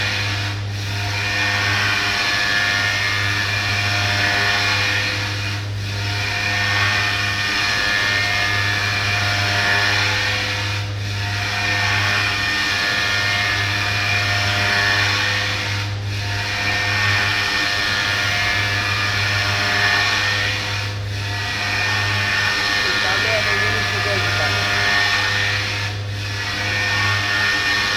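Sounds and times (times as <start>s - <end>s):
milling spindle whining: 18.6s - 27.9s
low machine hum: 20.8s - 27.9s.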